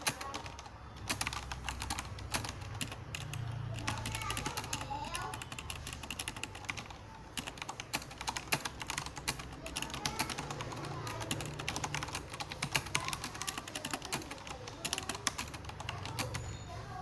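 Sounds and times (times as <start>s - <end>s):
mechanical keyboard typing: 0.0s - 16.6s.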